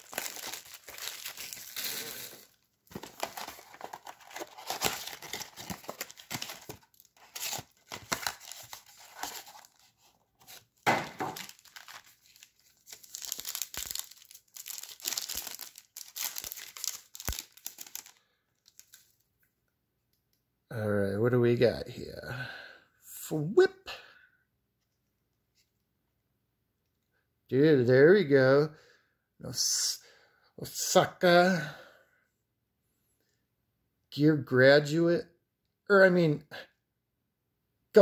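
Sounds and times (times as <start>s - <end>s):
card packaging tearing and crinkling: 0.0s - 19.1s.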